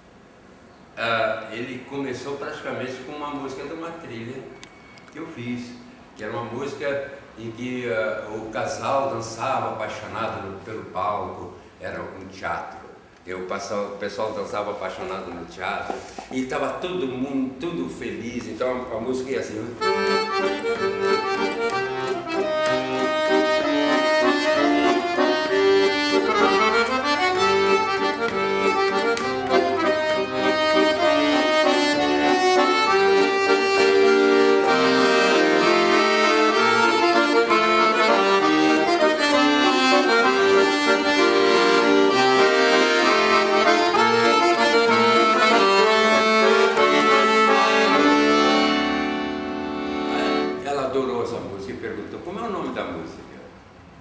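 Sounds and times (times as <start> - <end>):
solo accordion playing: 19.7 - 50.7.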